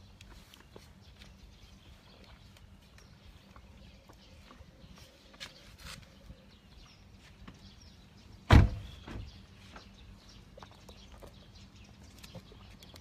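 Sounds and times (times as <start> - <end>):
loud thump: 8.5 - 9.3.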